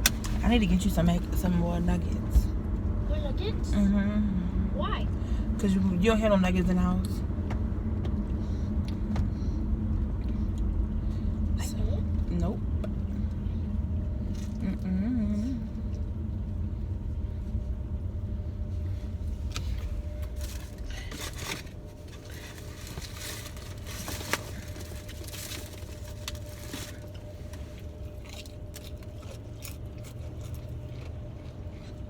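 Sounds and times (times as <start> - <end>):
car cabin road rumble: 0.0 - 32.0
rustling: 19.2 - 27.6.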